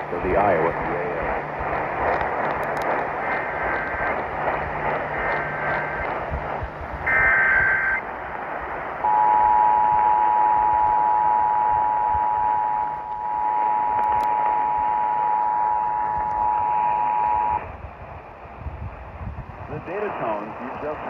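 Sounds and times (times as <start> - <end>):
radio noise hiss: 0.0 - 18.3, 19.6 - 21.0
screechy digital data tones: 7.0 - 8.1
two-tone attention signal: 7.1 - 8.0, 9.0 - 17.6.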